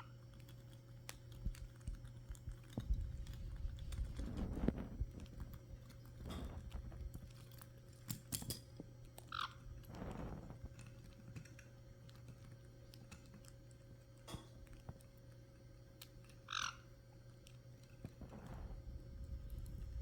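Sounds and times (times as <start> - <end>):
parrots chewing with beaks: 0.0 - 20.0
parrot squeak: 9.3 - 9.6, 16.5 - 16.8.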